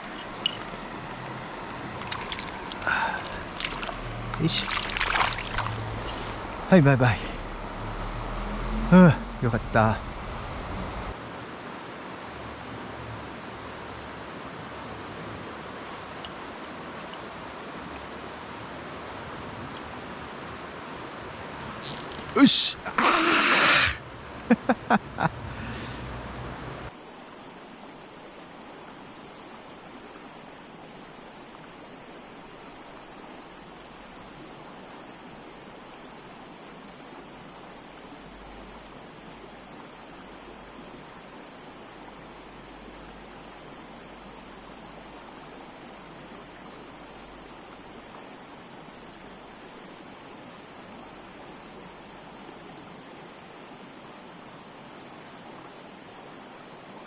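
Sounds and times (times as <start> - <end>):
stream rushing over rocks: 0.0 - 25.4.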